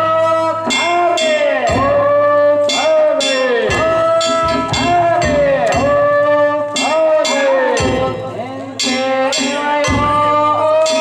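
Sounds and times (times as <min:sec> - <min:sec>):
drums beating: 0:00.0 - 0:11.0
hand gongs clanging: 0:02.6 - 0:11.0.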